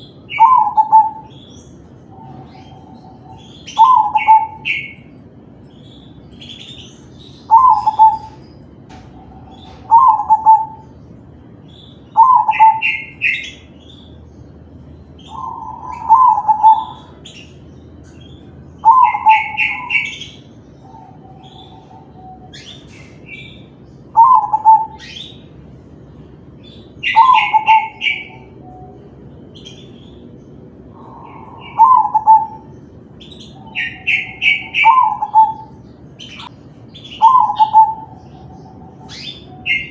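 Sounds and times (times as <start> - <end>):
dove cooing: 0.0 - 5.2, 7.5 - 10.9, 12.2 - 13.6, 15.2 - 17.3, 18.8 - 23.5, 24.1 - 25.3, 27.0 - 29.0, 30.9 - 32.8, 33.6 - 36.5, 37.1 - 39.9
bird chirping trills: 0.0 - 39.9.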